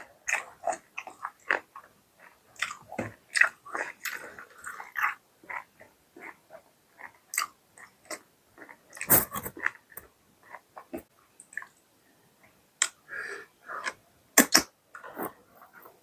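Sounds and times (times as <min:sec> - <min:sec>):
chewing with wet smacks: 0:00.0 - 0:11.8.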